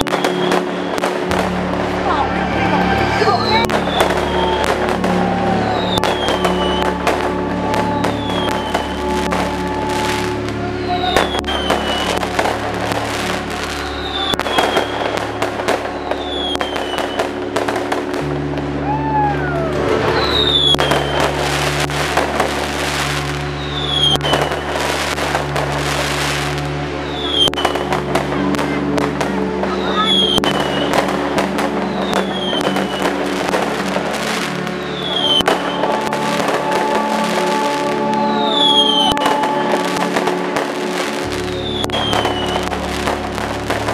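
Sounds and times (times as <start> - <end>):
falling firework whistles: 0.0 - 1.2, 3.4 - 10.4, 11.0 - 12.3, 13.7 - 17.4, 19.4 - 24.6, 25.9 - 27.8, 35.0 - 42.8
fireworks bangs and crackles: 0.0 - 43.9
steady music: 0.0 - 43.9.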